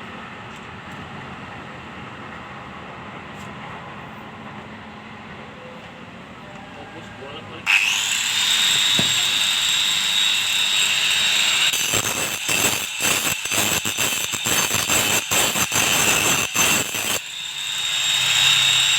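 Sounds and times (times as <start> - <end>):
angle grinder whining: 7.7 - 18.9
grinder grinding metal blade: 7.7 - 18.9.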